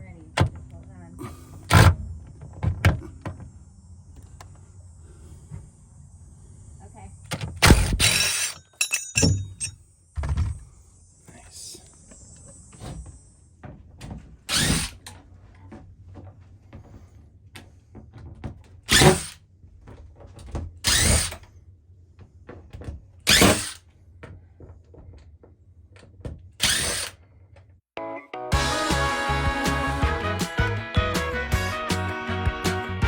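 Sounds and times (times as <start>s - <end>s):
power drill whirring: 7.7s - 8.6s, 14.5s - 15.0s, 18.9s - 19.4s, 20.8s - 21.4s, 23.3s - 23.8s, 26.6s - 27.2s.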